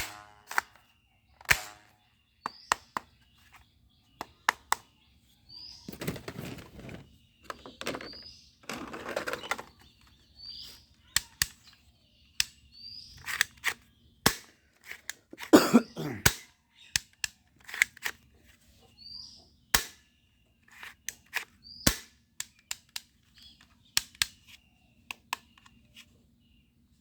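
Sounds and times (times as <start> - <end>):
toy guns clicking and clacking: 1.4 - 1.9
rustling handling noise: 5.8 - 10.9.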